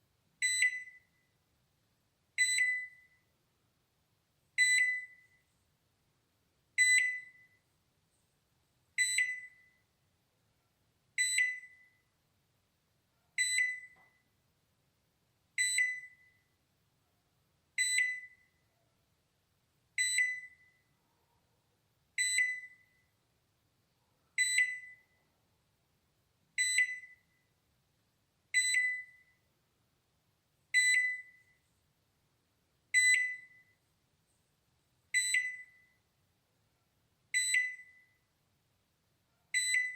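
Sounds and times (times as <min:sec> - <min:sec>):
microwave timer ding: 0:02.4 - 0:03.1, 0:04.6 - 0:05.2, 0:06.8 - 0:07.5, 0:09.0 - 0:09.7, 0:15.6 - 0:16.3, 0:22.2 - 0:22.9, 0:35.2 - 0:35.9, 0:39.6 - 0:39.9.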